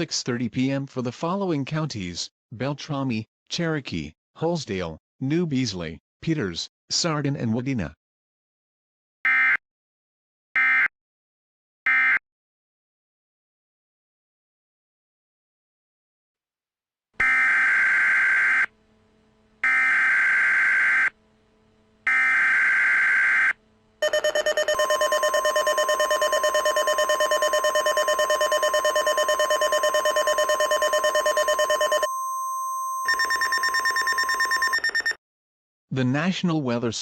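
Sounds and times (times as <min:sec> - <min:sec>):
pulsing electronic attention tone: 0:24.0 - 0:34.8
screeching digital data tones: 0:24.0 - 0:35.1
steady high electronic tone: 0:24.1 - 0:34.8.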